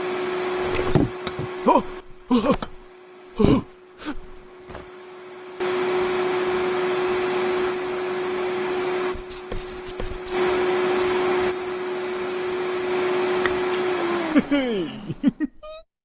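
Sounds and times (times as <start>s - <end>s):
voice exclamations: 1.6s - 2.8s, 13.9s - 15.8s.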